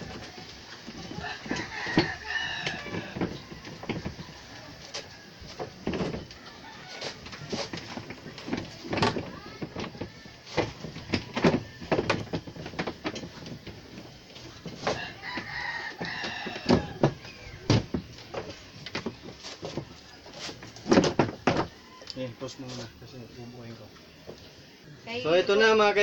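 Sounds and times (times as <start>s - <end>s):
rooster crowing: 0.9s - 5.6s, 6.3s - 7.9s, 14.8s - 17.7s, 21.7s - 22.9s.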